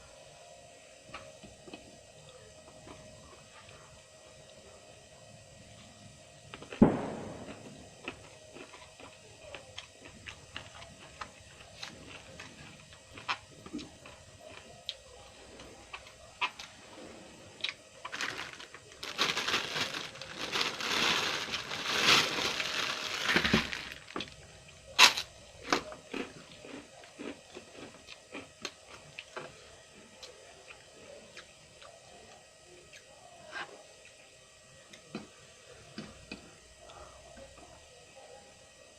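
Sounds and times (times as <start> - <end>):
person chewing crunchy food: 7.4 - 15.0, 17.6 - 24.4, 25.0 - 29.5.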